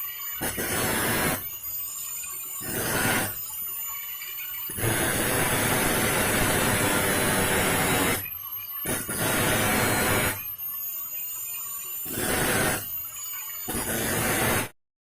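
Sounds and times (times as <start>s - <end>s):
angle grinder grinding saw teeth: 0.0s - 1.6s, 2.5s - 3.6s, 4.7s - 10.6s, 12.0s - 14.8s
grinder motor high whine: 0.4s - 1.6s, 2.6s - 3.6s, 4.7s - 10.6s, 12.0s - 13.1s, 13.7s - 14.8s.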